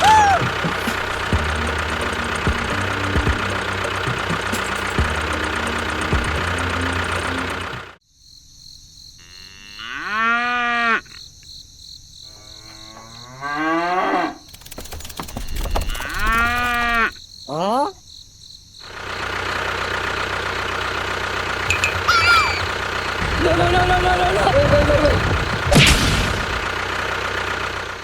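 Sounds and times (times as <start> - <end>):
small engine knocking rattle: 0.0 - 8.0, 14.5 - 17.0, 18.9 - 28.0
cow mooing: 9.2 - 11.2, 12.3 - 14.4.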